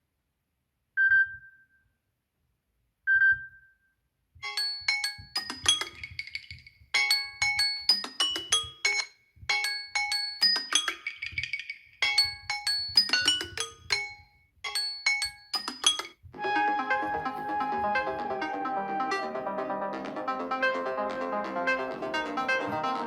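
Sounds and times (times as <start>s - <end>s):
mallet percussion ringtone melody: 4.4s - 19.6s.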